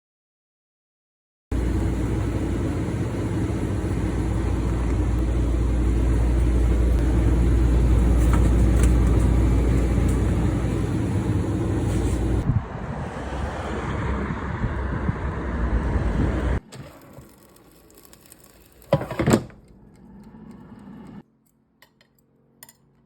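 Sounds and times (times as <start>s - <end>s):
vehicle low rumble: 1.5s - 16.6s.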